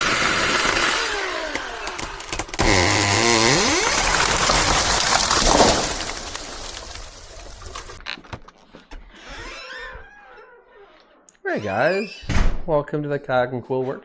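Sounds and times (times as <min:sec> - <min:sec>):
cordless chainsaw motor: 0:00.0 - 0:06.3.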